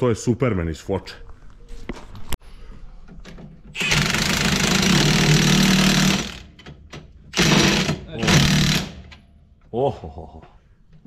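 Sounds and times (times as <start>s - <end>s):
impact wrench hammering: 3.8s - 9.2s.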